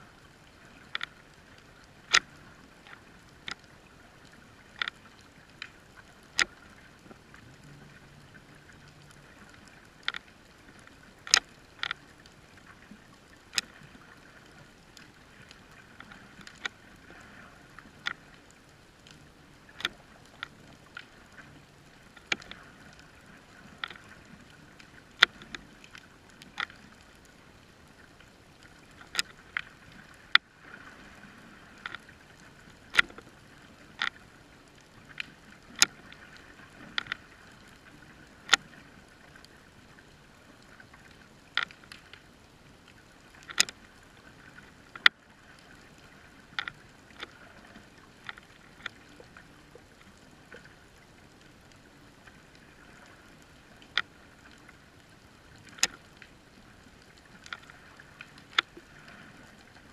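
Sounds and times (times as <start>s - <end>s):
sharp irregular clicks: 0.8s - 3.7s, 4.7s - 6.6s, 11.2s - 12.0s, 19.0s - 21.5s, 22.1s - 22.8s, 23.7s - 26.8s, 28.8s - 30.4s, 32.9s - 33.3s, 43.4s - 43.8s, 55.6s - 56.3s.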